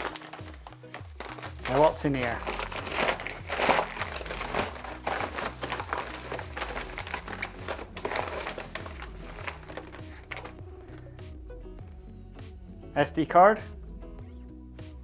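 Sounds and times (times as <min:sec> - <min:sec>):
plastic packaging crinkling: 0:00.0 - 0:10.6.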